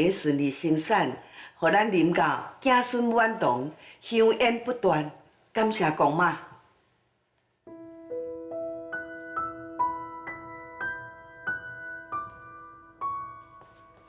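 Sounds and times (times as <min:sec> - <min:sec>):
gentle piano melody: 0:07.7 - 0:14.0.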